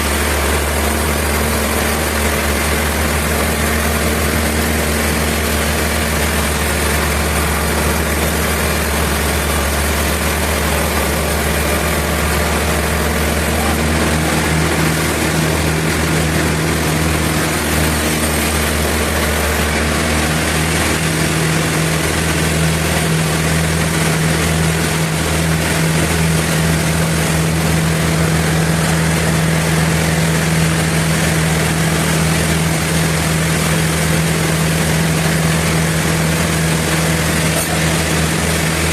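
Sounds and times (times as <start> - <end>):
engine drone: 0.0 - 38.9
saw noise: 0.0 - 38.9.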